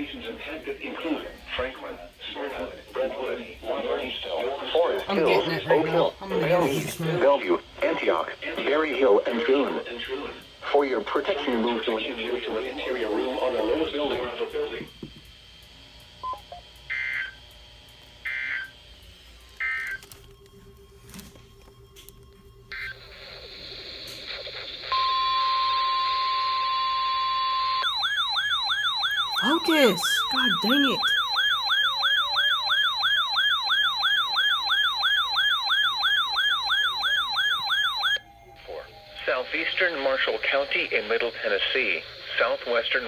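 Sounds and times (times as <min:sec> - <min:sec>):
siren on fast yelp: 0:27.8 - 0:39.0.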